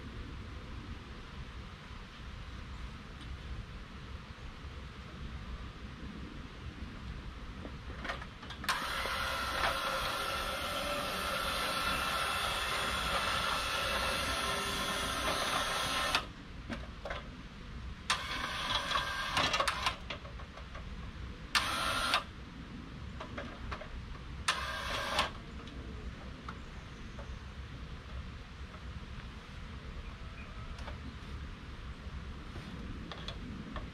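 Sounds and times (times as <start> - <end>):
machine running in bursts: 8.7 - 16.3.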